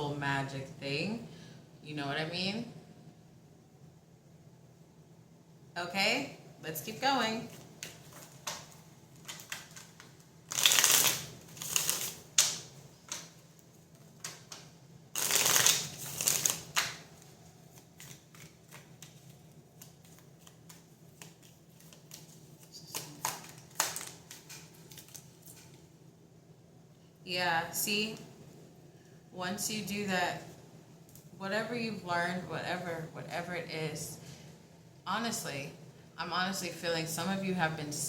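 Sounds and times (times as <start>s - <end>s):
cards being shuffled: 7.5s - 13.4s, 14.0s - 25.7s.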